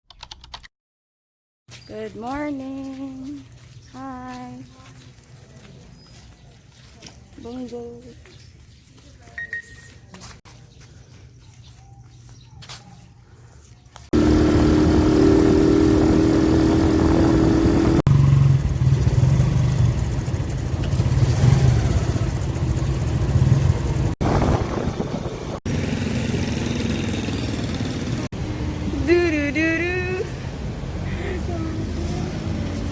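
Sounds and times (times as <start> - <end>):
road noise: 12.6 - 32.9
vehicle engine running: 14.1 - 32.9.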